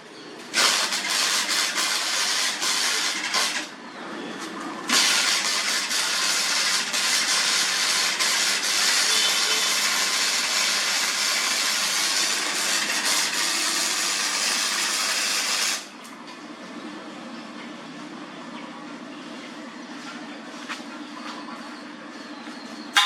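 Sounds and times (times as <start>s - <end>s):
welding arc crackling: 0.5s - 3.7s, 4.9s - 15.9s.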